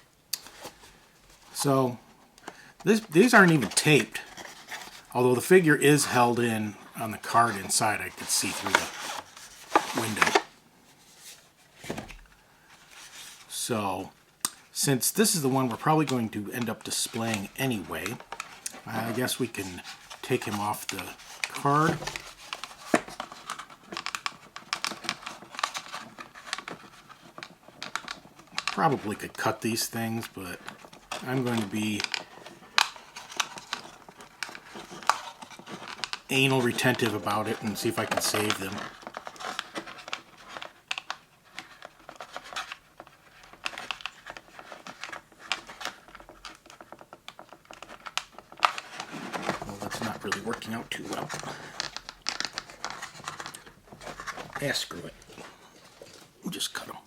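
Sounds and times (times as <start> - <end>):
cardboard box crinkling: 2.8 - 6.4, 7.2 - 13.5, 15.4 - 56.4.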